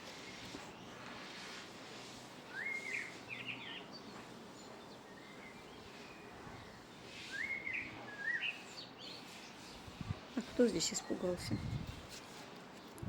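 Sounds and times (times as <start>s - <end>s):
background hiss: 0.0s - 11.0s
songbird chirping: 2.5s - 11.9s.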